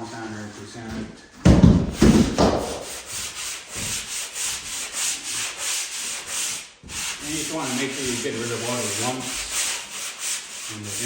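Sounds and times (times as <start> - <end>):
sander thumping on wall: 1.4 - 4.7
sander rasping on drywall: 1.9 - 11.0.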